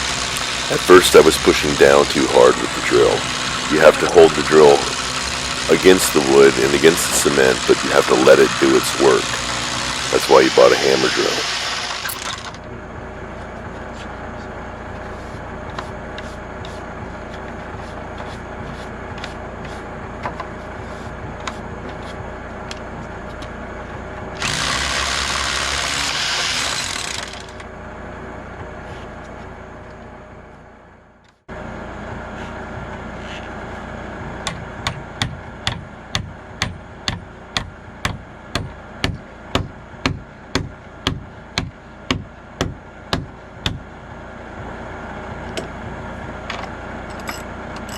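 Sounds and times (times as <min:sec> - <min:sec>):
hammer drill boring into concrete: 0:00.0 - 0:12.6, 0:24.4 - 0:27.6
low engine hum: 0:00.0 - 0:47.9.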